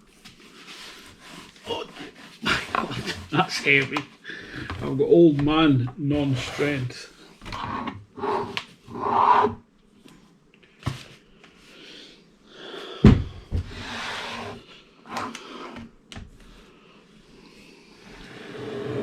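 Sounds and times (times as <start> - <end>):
cardboard rustling and scraping: 0.0 - 4.0.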